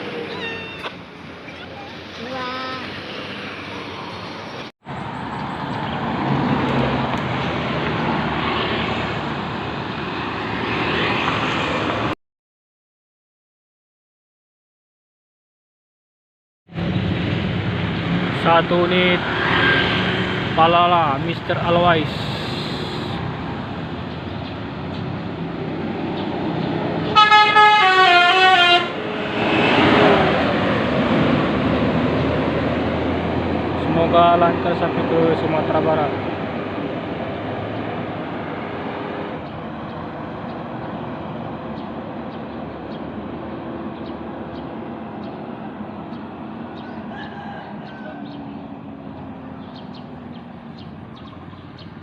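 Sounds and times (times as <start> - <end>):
bus passing close by: 0.0 - 12.2, 16.7 - 52.0
bus horn playing a tune: 27.1 - 29.0.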